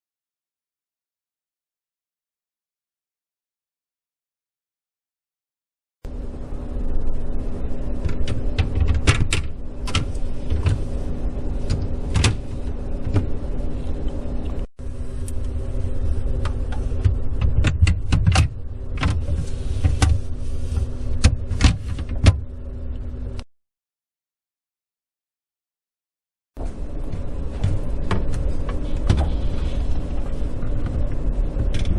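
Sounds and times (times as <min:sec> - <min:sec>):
low hum: 0:06.1 - 0:23.5, 0:26.6 - 0:31.9
fridge shelf clicking and knocking: 0:08.0 - 0:10.8, 0:11.6 - 0:13.4, 0:16.4 - 0:20.3, 0:21.1 - 0:22.5, 0:27.1 - 0:29.5.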